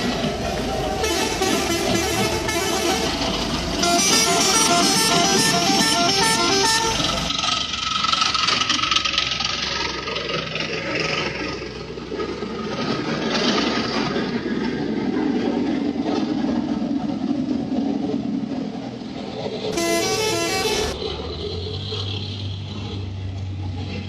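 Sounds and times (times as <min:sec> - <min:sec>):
bus road noise: 0:00.0 - 0:24.0
bus multi-tone air horn melody: 0:01.0 - 0:03.2, 0:03.8 - 0:07.3, 0:19.7 - 0:21.0.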